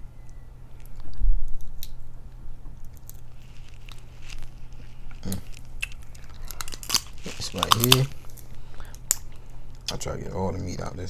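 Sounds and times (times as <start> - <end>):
wet squishing and chewing: 0.8 - 10.0
crab shell crunching: 2.8 - 9.9.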